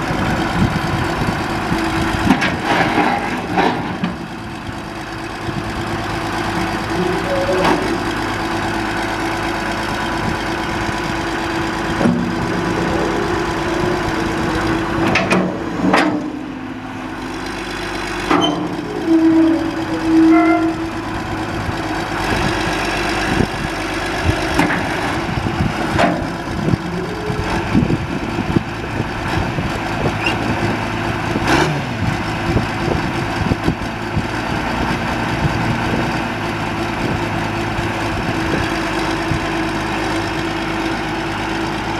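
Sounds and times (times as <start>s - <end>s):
diesel engine running: 0.0s - 41.9s
metal clanks: 15.0s - 16.5s.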